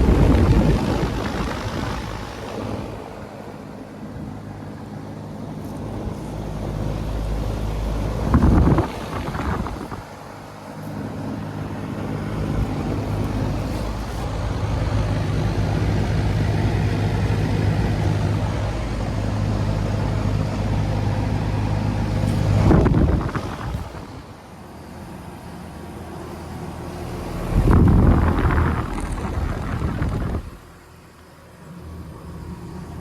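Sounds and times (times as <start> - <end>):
compressor hum: 0.0 - 33.0
condenser fan rushing: 0.0 - 33.0
loud noise bursts: 26.9 - 30.8.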